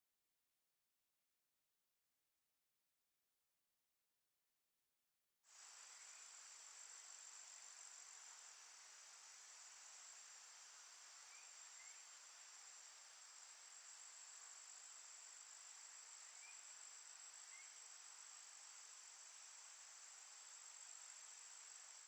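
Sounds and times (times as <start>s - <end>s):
high-pitched insect chorus: 5.5s - 22.0s.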